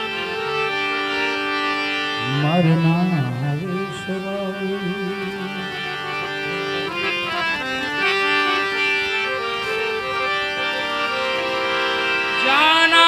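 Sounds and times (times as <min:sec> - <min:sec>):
harmonium playing: 0:00.0 - 0:13.0
person singing devotional song: 0:02.0 - 0:08.2, 0:11.5 - 0:13.0.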